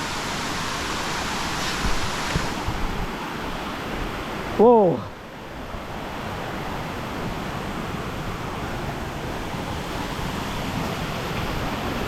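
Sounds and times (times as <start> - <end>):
falling water rushing: 0.0 - 12.0.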